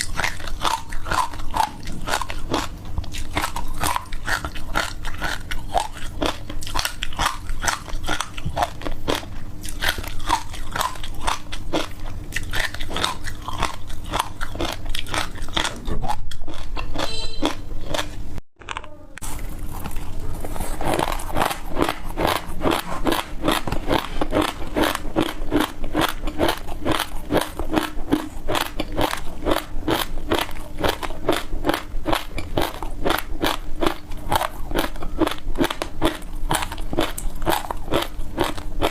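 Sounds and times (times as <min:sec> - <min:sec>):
ice being chewed: 0:00.0 - 0:38.9.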